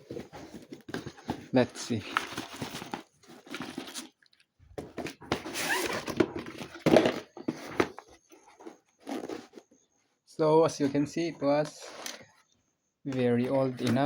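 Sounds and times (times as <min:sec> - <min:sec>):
packaging rustling and crinkling: 0:00.0 - 0:09.6.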